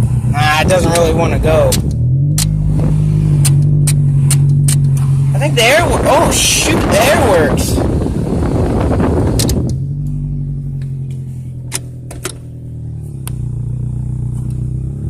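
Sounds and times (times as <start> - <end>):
car engine running at low revs: 0.0 - 15.0
sharp clicks: 1.7 - 2.6, 9.3 - 9.8.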